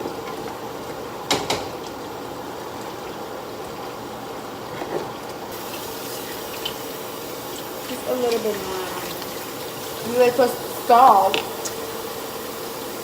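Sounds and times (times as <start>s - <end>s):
kitchenware clattering: 1.3s - 1.8s
food sizzling on stove: 5.5s - 13.0s.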